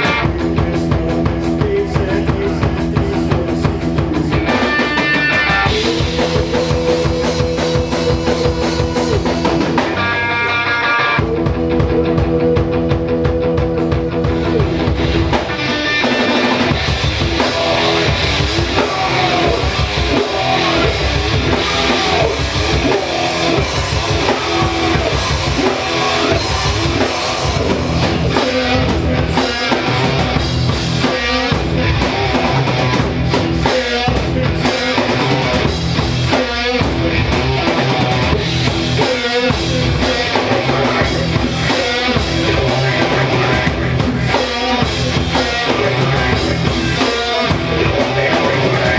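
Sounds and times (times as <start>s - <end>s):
rock band playing: 0.0s - 48.9s.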